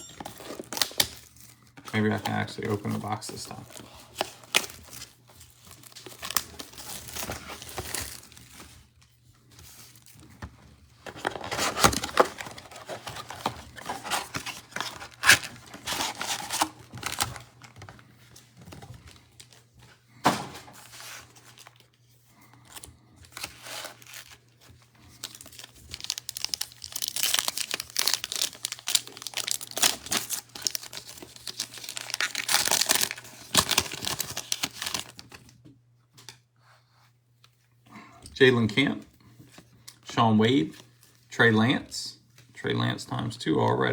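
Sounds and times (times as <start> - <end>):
wrappers ripping and crinkling: 0.2 - 9.0, 11.0 - 19.7, 20.8 - 35.5
cardboard box tearing: 11.1 - 17.7, 25.2 - 35.2.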